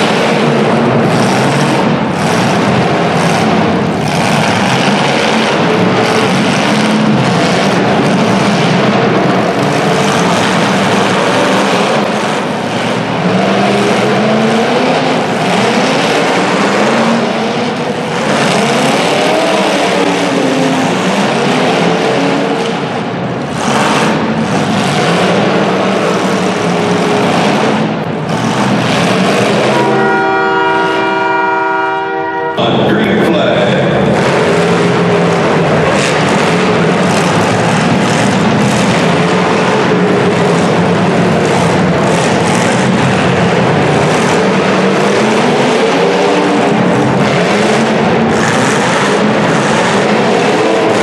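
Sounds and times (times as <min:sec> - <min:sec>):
car engines revving: 0:00.0 - 0:51.0
horn-like tone: 0:29.7 - 0:33.7.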